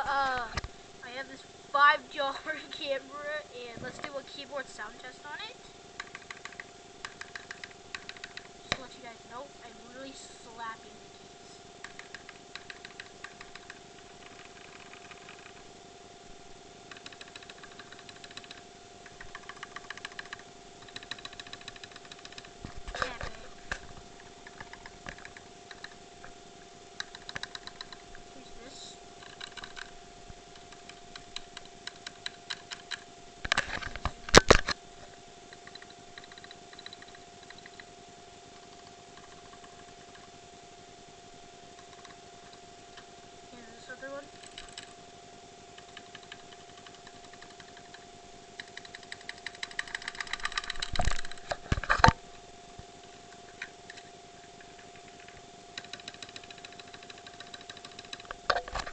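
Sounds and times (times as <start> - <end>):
faint steady hum: 0.0 - 58.9
keyboard typing: 6.0 - 8.9, 11.8 - 15.6, 16.9 - 26.0, 27.0 - 28.1, 29.2 - 29.9, 30.6 - 33.0, 35.5 - 37.9, 38.6 - 40.3, 41.8 - 43.0, 44.3 - 44.9, 45.8 - 48.0, 48.6 - 51.6, 53.3 - 58.4.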